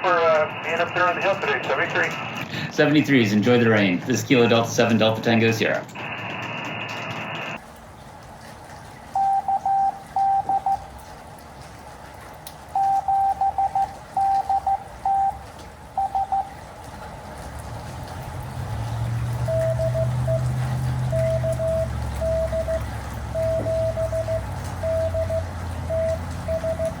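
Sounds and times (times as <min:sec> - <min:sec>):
radio receiver hiss: 0:00.0 - 0:02.8
morse code tones: 0:09.1 - 0:10.9, 0:12.7 - 0:16.6, 0:19.4 - 0:27.0.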